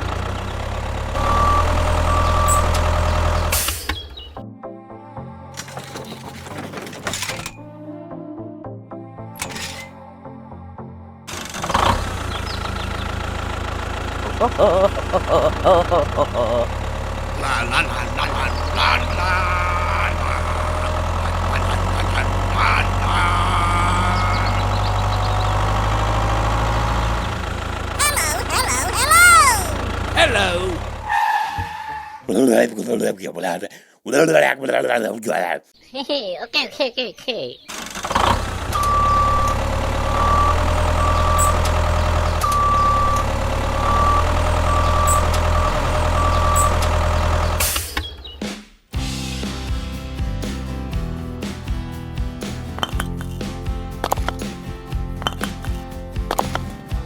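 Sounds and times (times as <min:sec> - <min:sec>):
tractor engine idling: 0:00.0 - 0:03.7, 0:11.3 - 0:28.0, 0:29.8 - 0:31.1.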